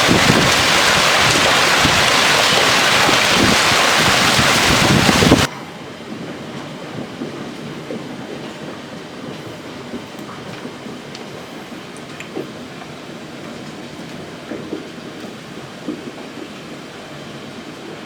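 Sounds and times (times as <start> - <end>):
heavy rain downpour: 0.0 - 5.5
steady rain hiss: 0.0 - 5.5
wind on microphone: 0.0 - 5.5.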